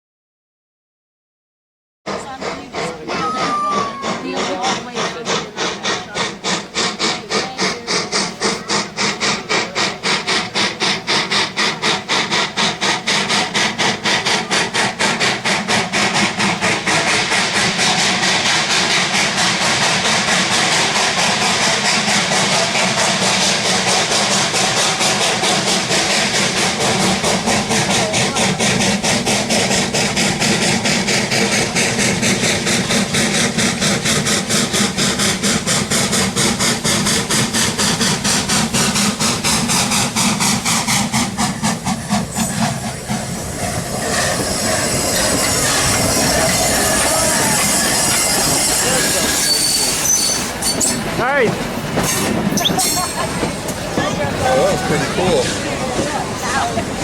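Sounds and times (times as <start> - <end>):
steam locomotive chuffing: 2.1 - 57.0.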